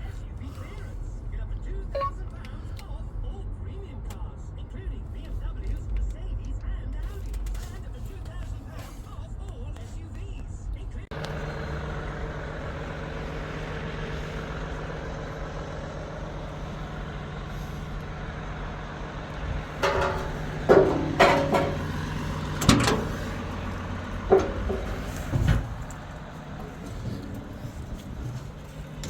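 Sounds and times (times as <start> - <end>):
diesel engine idling: 0.0 - 29.0
loud metal clunks: 11.2 - 29.0.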